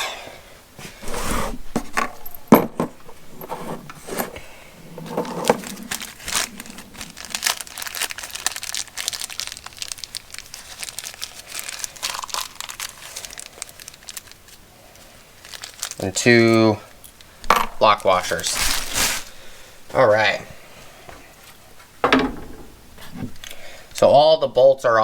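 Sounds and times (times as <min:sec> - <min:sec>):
plastic bag crinkling: 0:05.0 - 0:16.5, 0:17.1 - 0:19.7.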